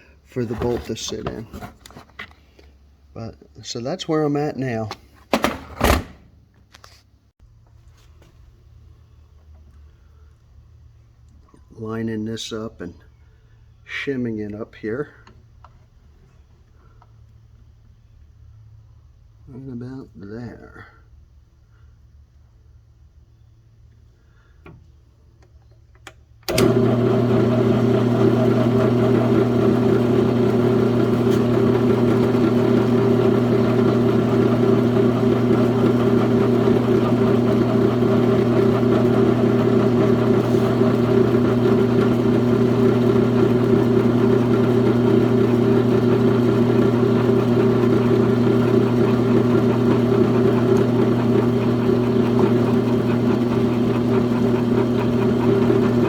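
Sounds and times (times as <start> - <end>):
milling machine motor humming: 26.5 - 56.0.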